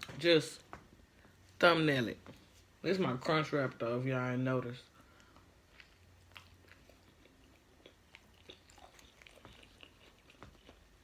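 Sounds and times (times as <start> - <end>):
chewing with crunches: 4.9 - 11.0.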